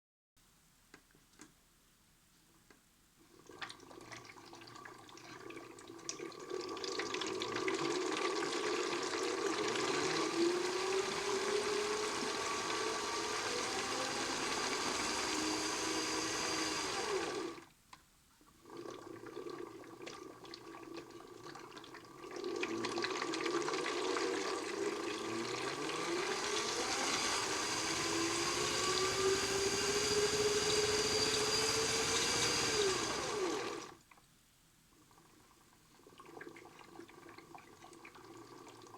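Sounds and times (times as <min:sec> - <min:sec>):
small motor whining: 0:09.6 - 0:17.7, 0:25.2 - 0:34.0.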